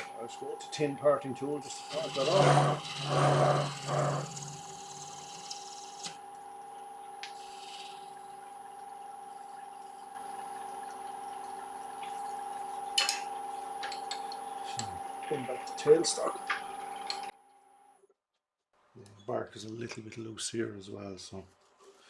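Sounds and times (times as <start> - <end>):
wood lathe motor hum: 0.4 - 10.1
short rasping noises: 1.6 - 6.2.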